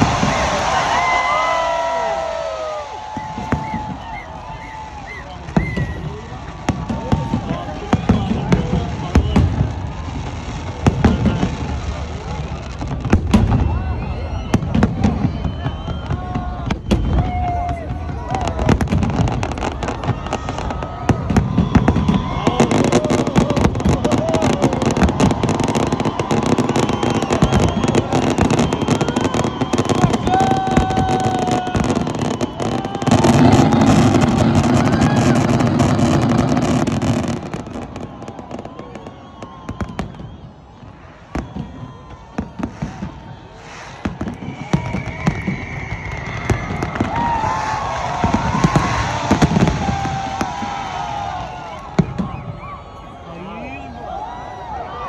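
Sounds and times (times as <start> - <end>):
fireworks bangs and crackling: 0.0 - 55.0
people's voices: 3.6 - 21.0, 48.1 - 55.0.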